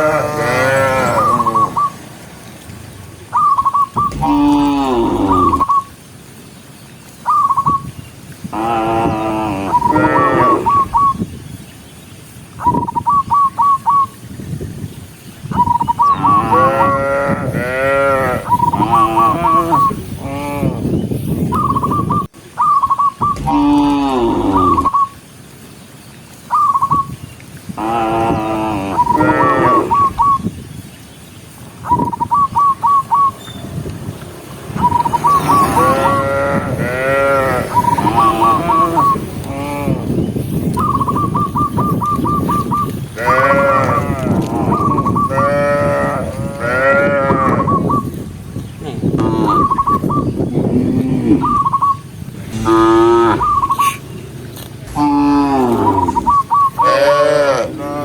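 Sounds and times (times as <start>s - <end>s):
cows mooing: 0.0s - 2.1s, 4.0s - 5.7s, 8.5s - 10.9s, 16.2s - 20.9s, 23.4s - 24.9s, 27.8s - 30.2s, 34.5s - 40.2s, 43.2s - 47.8s, 48.8s - 49.9s, 50.6s - 51.7s, 52.4s - 58.0s
bird chirping phrase: 0.3s - 2.0s, 3.0s - 12.0s, 18.4s - 27.2s, 28.3s - 43.5s, 51.4s - 57.0s
whistled call: 1.2s - 2.0s, 3.3s - 6.0s, 7.2s - 7.9s, 9.7s - 11.3s, 12.6s - 14.2s, 21.5s - 25.2s, 26.5s - 27.2s, 29.0s - 30.5s, 31.8s - 33.7s, 34.8s - 36.2s, 37.7s - 39.3s, 40.8s - 43.0s, 49.4s - 50.4s, 51.4s - 52.1s, 52.7s - 54.1s, 55.6s - 57.0s.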